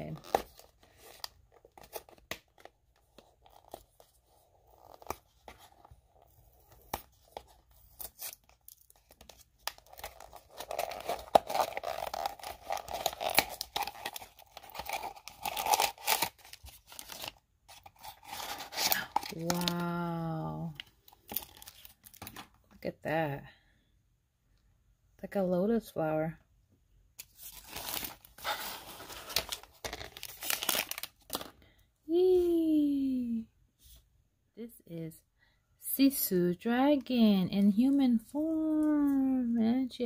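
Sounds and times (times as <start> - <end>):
packaging crinkling and tearing: 0.0 - 4.1, 6.6 - 20.0, 20.8 - 22.4, 27.2 - 31.5.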